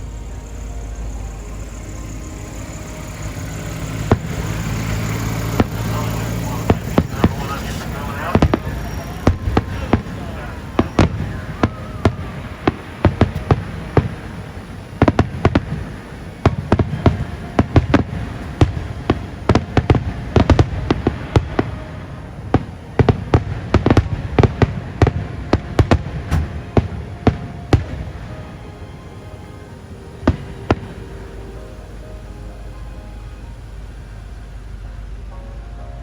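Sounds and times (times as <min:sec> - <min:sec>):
fireworks exploding: 0:00.0 - 0:33.6
faint music: 0:00.0 - 0:36.0
low rumble: 0:00.0 - 0:36.0.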